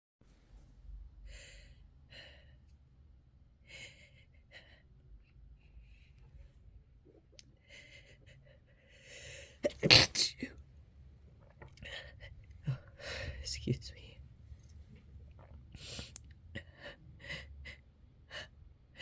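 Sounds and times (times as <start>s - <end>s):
person breathing: 7.6s - 9.6s, 11.9s - 13.5s, 15.4s - 17.6s
loud sharp sneeze: 9.6s - 10.5s.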